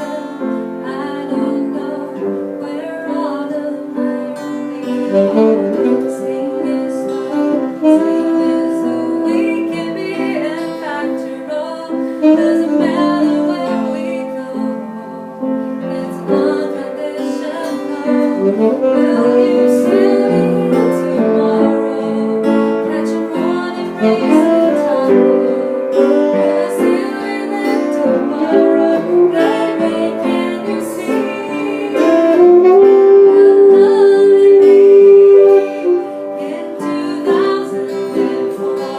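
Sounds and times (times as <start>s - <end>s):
piano: 0.0s - 38.9s
saxophone melody: 3.2s - 38.9s
jazz band playing: 4.7s - 10.4s, 12.1s - 14.2s, 17.8s - 36.8s.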